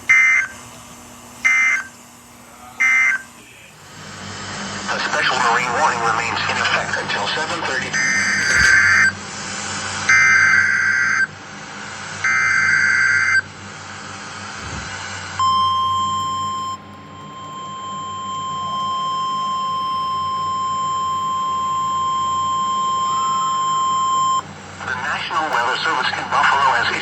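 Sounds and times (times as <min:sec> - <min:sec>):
steady warning alarm tone: 0:00.0 - 0:00.7, 0:01.4 - 0:02.0, 0:02.7 - 0:11.4, 0:12.2 - 0:13.5, 0:15.4 - 0:27.0
screeching digital data bursts: 0:04.9 - 0:09.2, 0:10.1 - 0:11.3.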